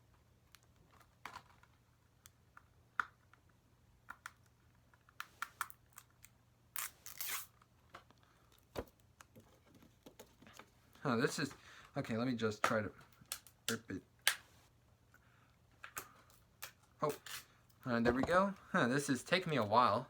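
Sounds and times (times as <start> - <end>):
plastic case clicks and crinkles: 0.5 - 6.4
seal tearing rustle: 5.6 - 7.7.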